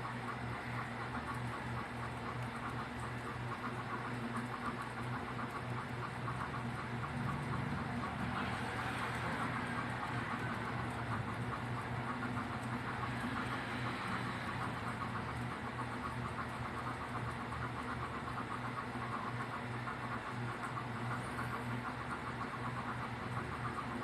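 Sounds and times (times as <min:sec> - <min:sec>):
low electrical hum: 0:00.0 - 0:24.0.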